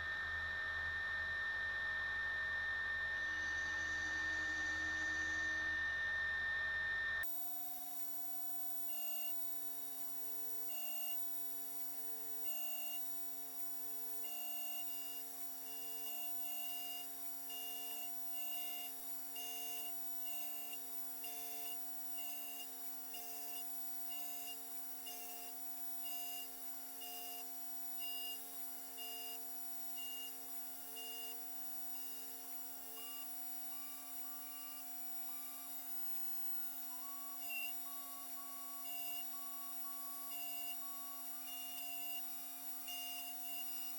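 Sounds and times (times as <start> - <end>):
machine hum: 0.0 - 22.6
axis motors whirring: 7.2 - 43.9.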